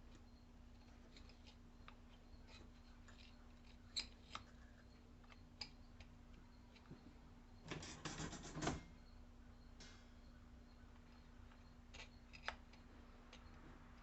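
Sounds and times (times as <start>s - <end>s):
steady low hum: 0.0s - 14.0s
small hard parts clicking: 11.0s - 14.0s.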